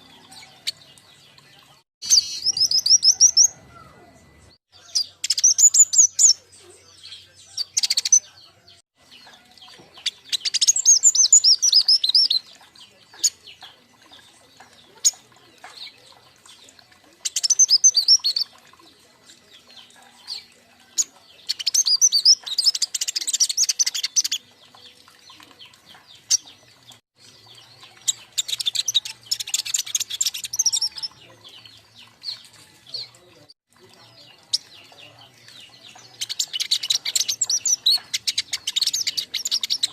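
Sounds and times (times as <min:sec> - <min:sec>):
young birds twittering: 0:00.0 - 0:39.9.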